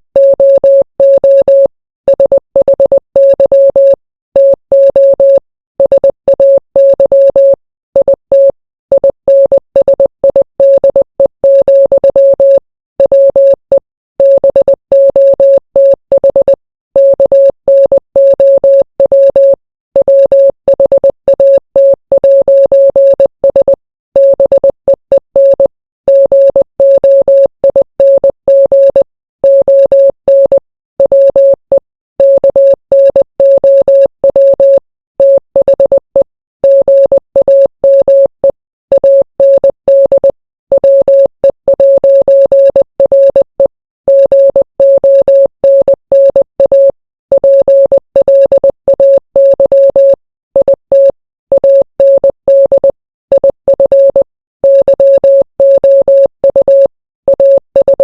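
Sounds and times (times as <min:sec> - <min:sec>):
morse code beeping: 0:36.6 - 0:58.0.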